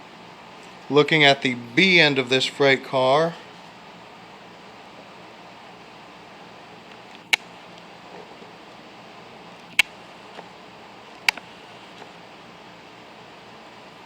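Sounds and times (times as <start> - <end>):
faint room hiss: 0.0 - 14.0
sharp plastic clicks: 11.2 - 11.4.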